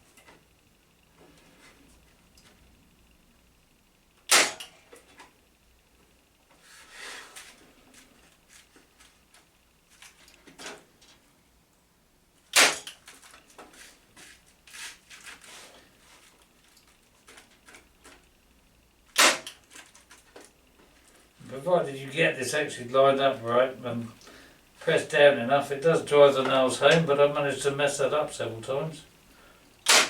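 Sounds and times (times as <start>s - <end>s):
nail gun firing into wood: 4.3s - 4.8s, 12.5s - 13.0s, 19.2s - 19.6s.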